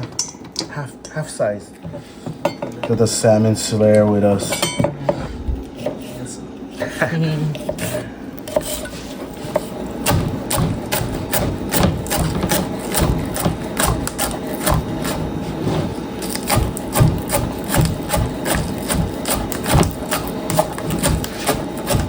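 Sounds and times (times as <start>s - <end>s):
knife slicing onion on board: 7.7s - 22.0s.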